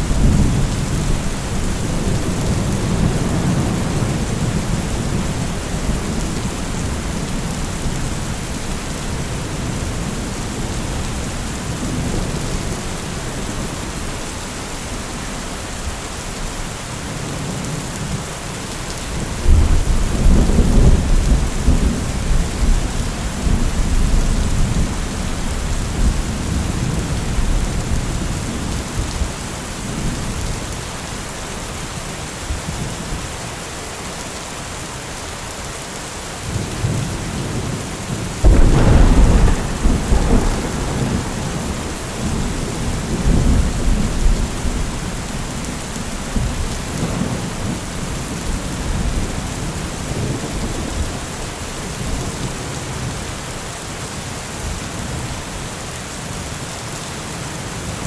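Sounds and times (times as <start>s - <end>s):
low rolling thunder: 0.0s - 13.8s, 19.3s - 30.5s, 36.5s - 53.2s
heavy rain: 0.0s - 58.0s
loud thunderclap: 38.4s - 45.5s.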